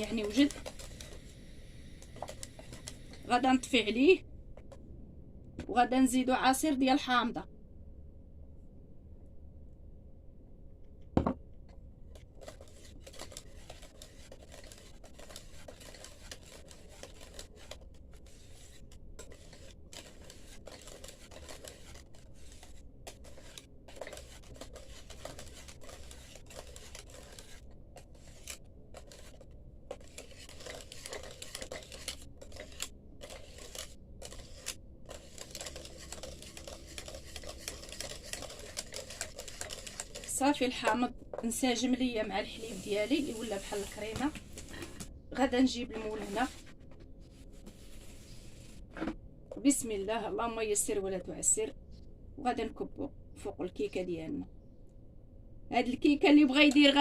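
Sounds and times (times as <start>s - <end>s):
utensil scraping a pot: 12.4s - 41.0s.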